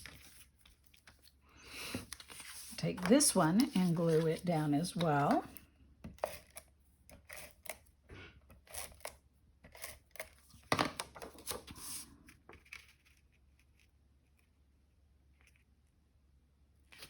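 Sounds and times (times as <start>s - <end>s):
paper rustling and scraping: 0.0s - 1.3s, 1.9s - 5.5s, 10.5s - 13.3s.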